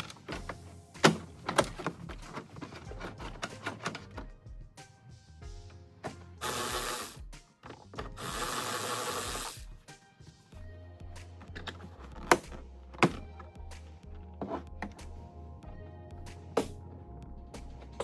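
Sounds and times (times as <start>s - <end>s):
background music: 0.0s - 18.0s
harsh mechanical noise: 6.4s - 9.7s.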